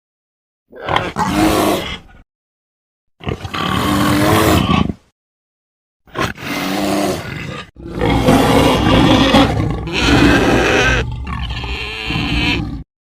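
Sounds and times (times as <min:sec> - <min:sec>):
dinosaur roar: 0:06.1 - 0:12.9.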